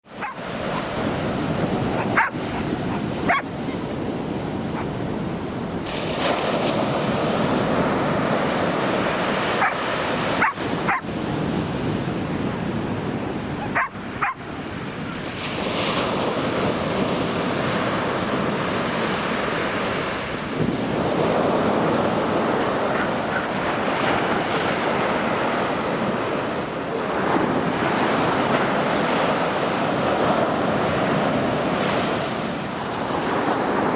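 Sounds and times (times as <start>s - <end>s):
sea waves breaking on beach: 0.0s - 33.9s.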